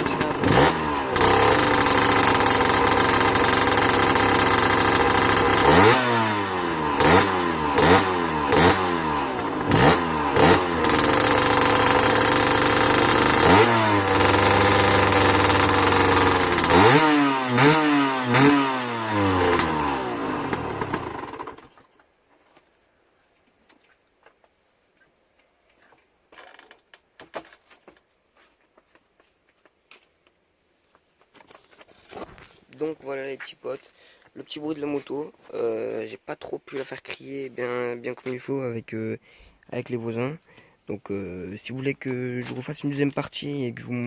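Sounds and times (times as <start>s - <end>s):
dirt bike engine revving: 0.0s - 21.7s.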